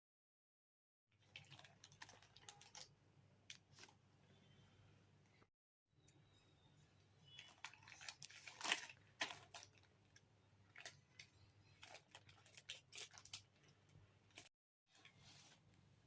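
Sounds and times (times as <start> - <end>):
plastic packaging crinkling: 1.2 - 4.0, 7.2 - 14.5.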